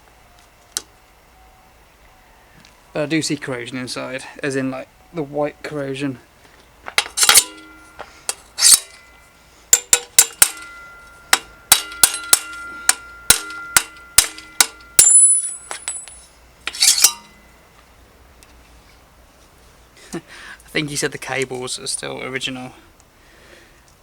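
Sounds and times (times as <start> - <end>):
metallic tool clicks and knocks: 7.0 - 9.0, 9.8 - 17.4.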